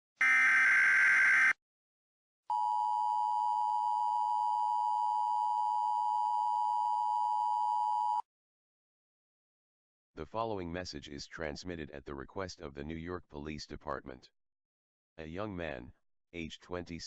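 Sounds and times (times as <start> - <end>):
dual-tone alarm: 0.2 - 1.6, 2.5 - 8.2.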